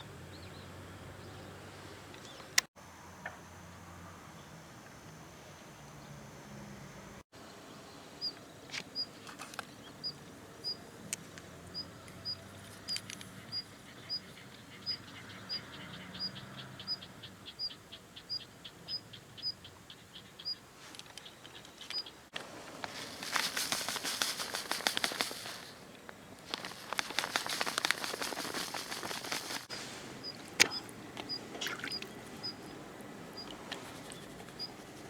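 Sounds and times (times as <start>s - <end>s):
small bird chirping: 8.2s - 10.8s, 11.7s - 22.3s, 23.0s - 35.0s
loud crackling rustle: 22.4s - 30.7s.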